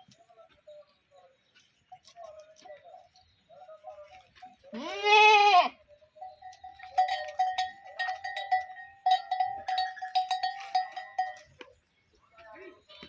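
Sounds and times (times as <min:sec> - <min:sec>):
sheep bleating: 0:04.7 - 0:05.8
livestock bells clinking: 0:05.9 - 0:11.9.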